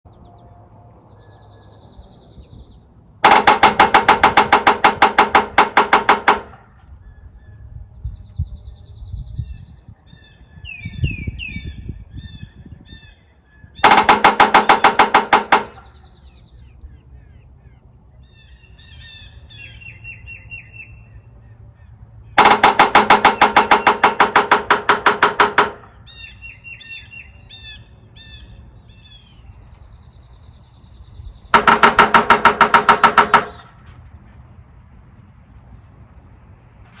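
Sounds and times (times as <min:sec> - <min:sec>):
birds chirping: 0:00.1 - 0:34.4
woodpecker drumming on metal gutter: 0:03.2 - 0:06.8, 0:13.8 - 0:16.3, 0:22.4 - 0:26.1, 0:31.4 - 0:33.9.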